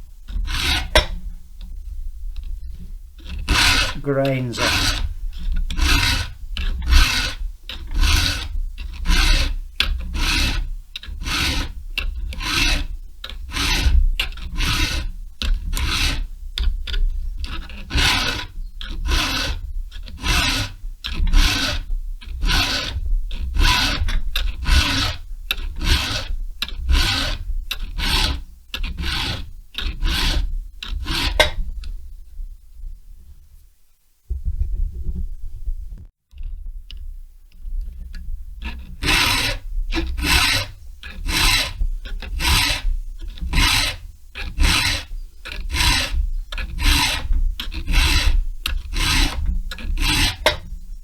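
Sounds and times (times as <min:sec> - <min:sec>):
hand file rasping on chainsaw chain: 0:00.3 - 0:01.1, 0:03.2 - 0:16.3, 0:16.9 - 0:31.6, 0:38.6 - 0:50.7.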